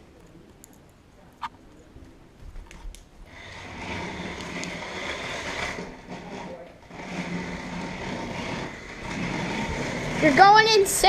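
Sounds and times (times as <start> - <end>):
electric motors whining: 6.8 - 10.6.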